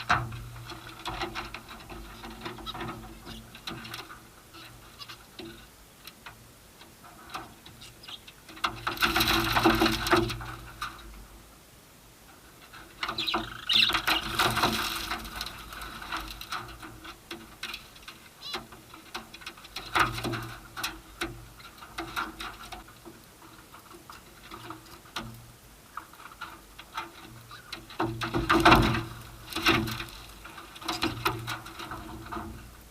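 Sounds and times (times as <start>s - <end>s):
birds scratching and flapping: 0.0s - 5.7s, 7.1s - 11.1s, 12.6s - 32.9s
bird chirps: 7.8s - 8.3s, 13.1s - 14.4s.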